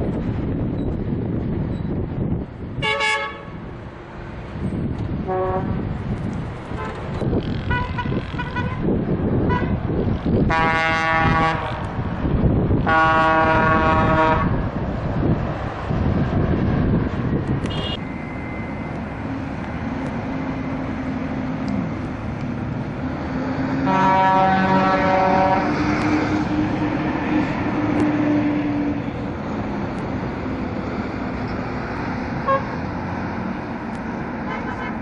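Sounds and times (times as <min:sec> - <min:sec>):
engine hum: 0:00.0 - 0:35.0
traffic noise: 0:00.0 - 0:35.0
bus horn blast: 0:02.8 - 0:03.6, 0:05.2 - 0:05.8, 0:07.7 - 0:08.9, 0:09.5 - 0:09.8, 0:10.5 - 0:12.0, 0:12.8 - 0:14.6, 0:17.6 - 0:18.0, 0:23.8 - 0:26.5, 0:32.4 - 0:32.8, 0:34.5 - 0:35.0.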